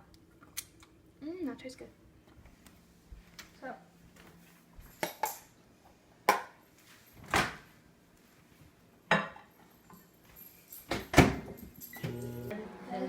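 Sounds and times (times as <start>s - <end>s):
dishes and cutlery clinking: 9.1s - 12.5s.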